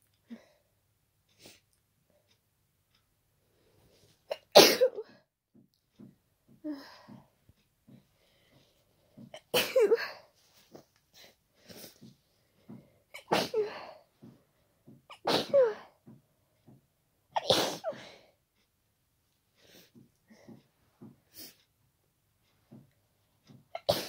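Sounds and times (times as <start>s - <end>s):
short breaths: 6.6s - 9.3s
person sneezing: 13.2s - 13.9s, 15.2s - 15.9s, 17.4s - 18.2s, 23.8s - 24.0s.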